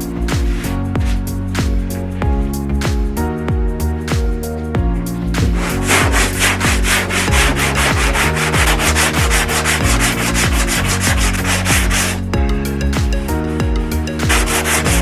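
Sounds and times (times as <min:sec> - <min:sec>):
background music with beat: 0:00.0 - 0:15.0
hand sanding strokes: 0:05.6 - 0:12.2.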